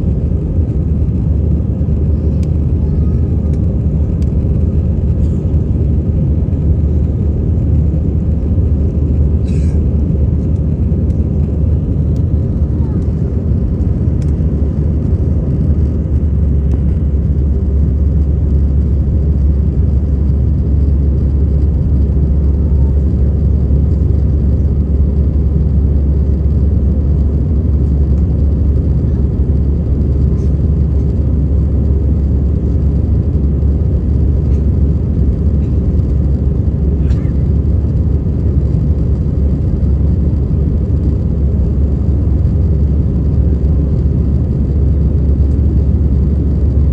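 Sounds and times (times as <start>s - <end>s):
airliner cabin engine rumble: 0.0s - 46.9s.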